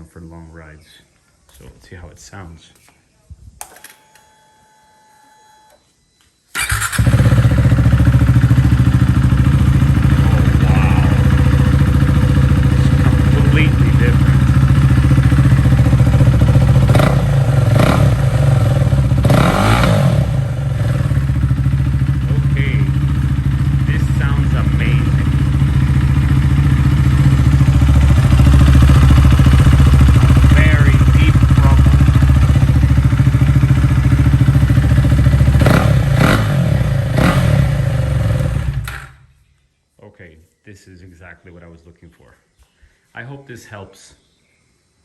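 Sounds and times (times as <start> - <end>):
motorcycle engine idling and revving: 6.6 - 39.3.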